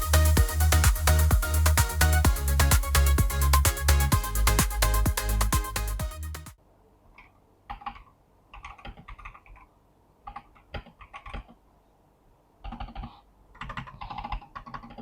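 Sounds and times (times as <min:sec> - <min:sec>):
mechanical keyboard typing: 0:07.8 - 0:09.7, 0:10.3 - 0:11.6, 0:12.6 - 0:15.0.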